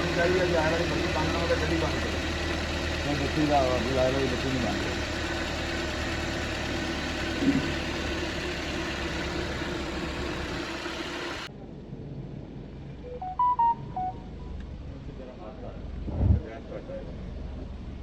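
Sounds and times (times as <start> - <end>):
car engine idling: 0.0 - 11.5
electronic beeps: 13.1 - 14.5.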